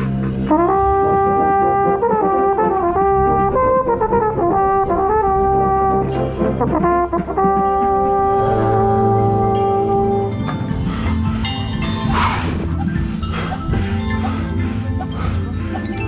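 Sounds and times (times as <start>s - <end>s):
sustained low brass: 0.0s - 16.0s
mellophone playing: 6.8s - 16.0s.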